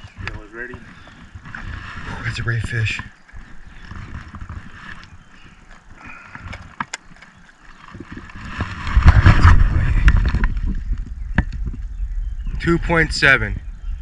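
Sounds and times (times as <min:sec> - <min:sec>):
handling rumble and knocks: 0:08.0 - 0:13.8.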